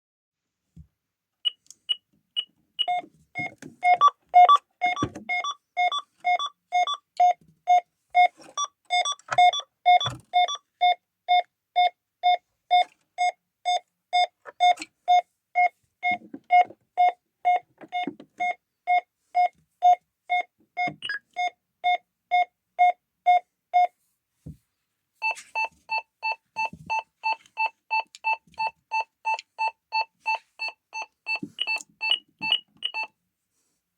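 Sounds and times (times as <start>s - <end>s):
alarm panel beeping: 2.4s - 7.4s, 8.2s - 10.6s, 25.2s - 33.1s.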